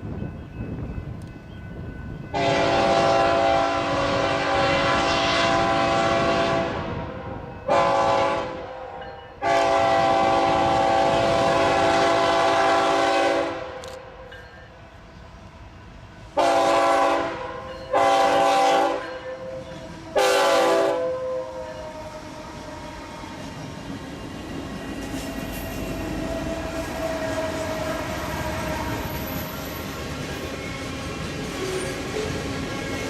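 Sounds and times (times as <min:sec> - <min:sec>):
freight train rumble: 0:00.0 - 0:33.0
locomotive air horn blasts: 0:02.3 - 0:14.3, 0:16.4 - 0:23.4, 0:26.0 - 0:29.6.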